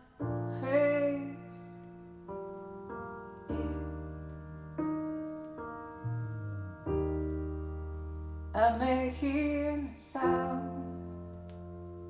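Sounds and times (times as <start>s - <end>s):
piano chords: 0.0s - 12.0s
person singing slow song: 3.5s - 4.2s, 8.6s - 11.2s
low bass: 6.0s - 9.8s.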